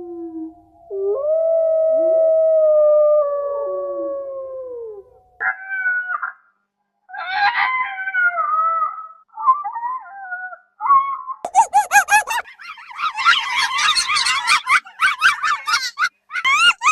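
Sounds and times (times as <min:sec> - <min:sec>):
dogs howling: 0:13.0 - 0:16.9.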